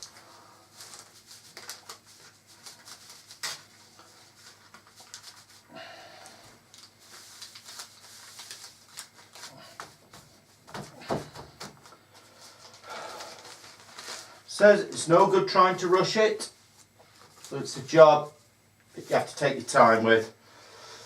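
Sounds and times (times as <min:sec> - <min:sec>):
paper rustling and crinkling: 0:00.0 - 0:05.7, 0:06.6 - 0:14.4.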